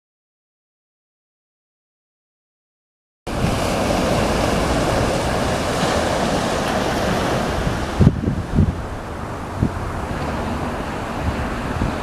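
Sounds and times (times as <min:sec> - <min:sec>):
wind buffeting microphone: 0:03.3 - 0:12.0.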